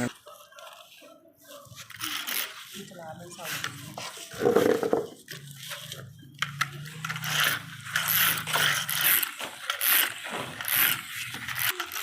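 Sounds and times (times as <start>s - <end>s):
toy gear mechanism clicking: 1.9s - 2.7s, 5.8s - 12.0s.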